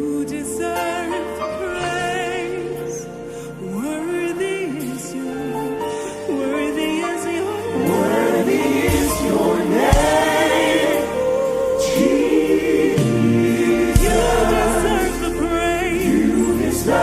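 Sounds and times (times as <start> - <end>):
gospel choir singing: 0.0 - 17.0
drum and cymbal strikes: 8.8 - 11.1, 12.8 - 16.8
steady bass: 8.9 - 17.0.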